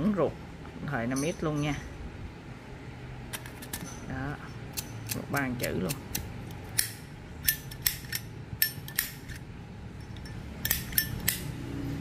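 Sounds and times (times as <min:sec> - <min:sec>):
metal lighters clicking and clinking: 0:04.7 - 0:09.5, 0:10.1 - 0:11.5.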